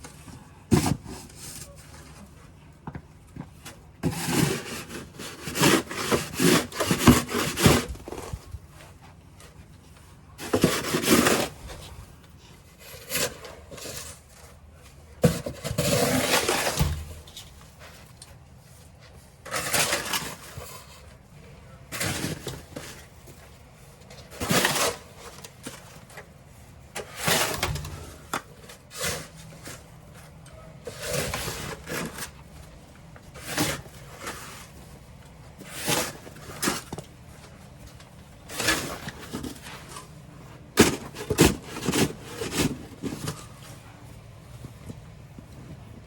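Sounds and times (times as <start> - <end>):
snow shovel scraping snow: 10.4 - 11.8, 15.6 - 17.1, 35.6 - 36.9.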